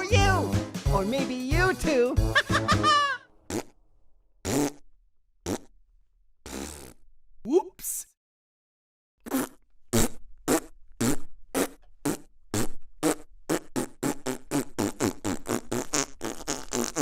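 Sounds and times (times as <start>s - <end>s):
comic fart sound effects: 2.2s - 3.8s, 4.4s - 5.8s, 6.4s - 7.1s, 9.2s - 17.0s.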